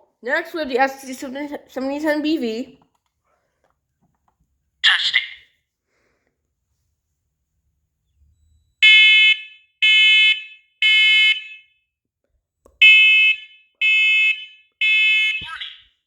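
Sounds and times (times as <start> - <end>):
smoke alarm beeping: 8.4 - 11.7, 12.8 - 15.8.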